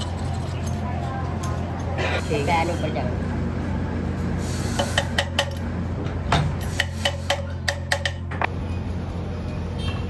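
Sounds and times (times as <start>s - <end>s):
metal parts clinking: 0.0s - 2.0s.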